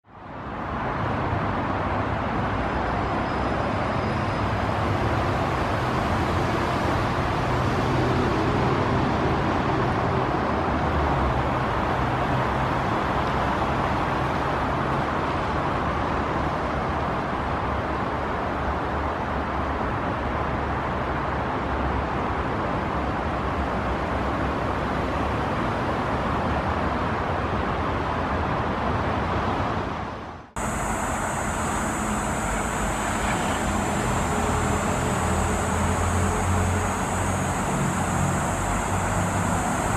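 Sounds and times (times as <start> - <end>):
expressway traffic noise: 0.0 - 39.9
high thin whine: 30.6 - 39.9.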